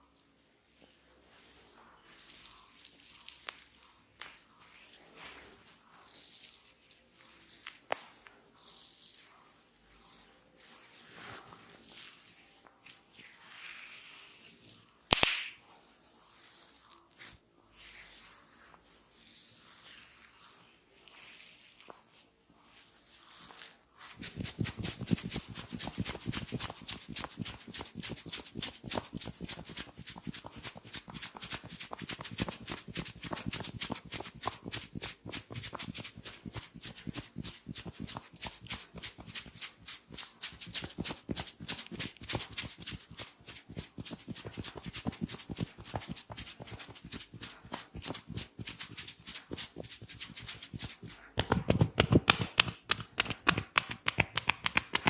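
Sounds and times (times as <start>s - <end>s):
hair crackling snaps: 15.1s - 15.6s, 51.4s - 55.0s.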